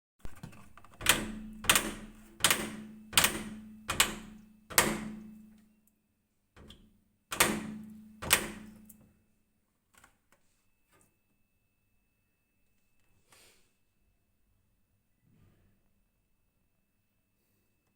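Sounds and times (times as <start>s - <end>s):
washing machine drum banging: 1.0s - 5.4s, 6.6s - 8.9s.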